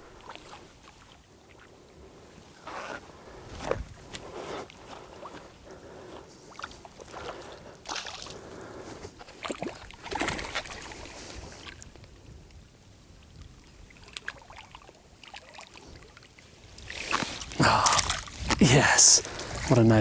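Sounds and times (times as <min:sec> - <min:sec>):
water splashing: 0:17.1 - 0:19.8.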